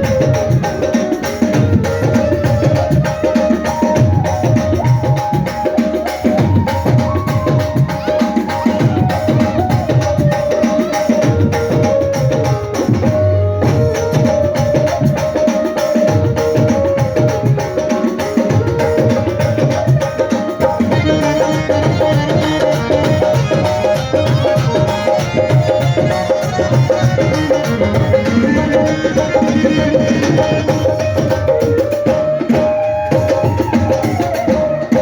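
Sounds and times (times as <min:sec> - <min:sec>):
hand percussion rhythm: 0:00.0 - 0:35.0.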